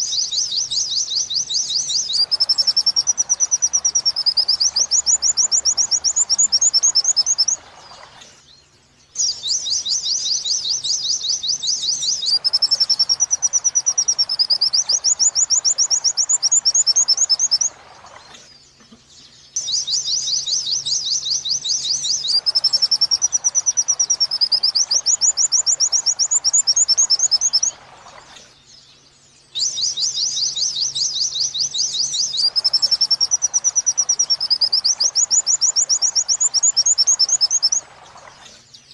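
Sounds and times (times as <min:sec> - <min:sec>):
bird trilling high notes: 0:00.0 - 0:07.6, 0:19.6 - 0:27.8, 0:29.6 - 0:37.8.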